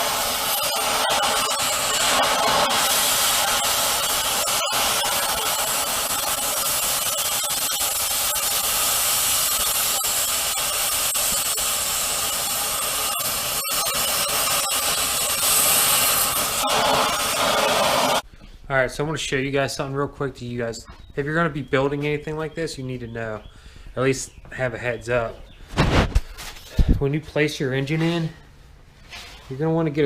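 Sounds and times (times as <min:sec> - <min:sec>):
gas cutting torch hissing roar: 0:00.0 - 0:18.2.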